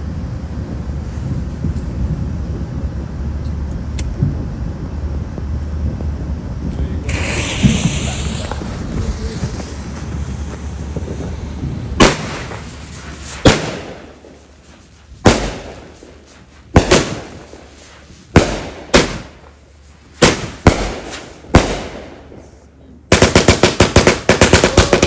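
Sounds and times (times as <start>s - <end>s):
fireworks bangs: 7.0s - 25.0s
firecracker string cracks: 7.1s - 19.5s.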